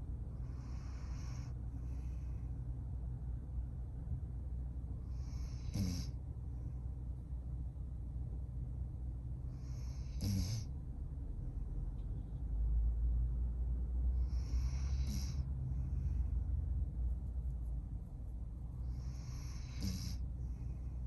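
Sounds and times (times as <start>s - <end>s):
dog breathing deeply: 0.3s - 2.8s, 9.4s - 10.7s, 14.1s - 17.0s, 18.2s - 21.0s
dog snorting: 5.2s - 6.1s, 9.6s - 10.7s, 14.2s - 15.4s, 18.8s - 20.3s.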